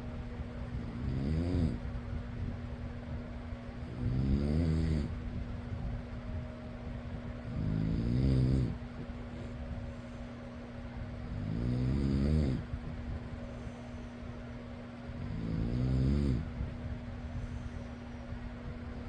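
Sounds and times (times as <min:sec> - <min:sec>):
electric fan humming: 0:00.0 - 0:19.0
person snoring: 0:00.8 - 0:01.8, 0:03.9 - 0:05.2, 0:07.5 - 0:08.8, 0:11.3 - 0:12.7, 0:15.2 - 0:16.5.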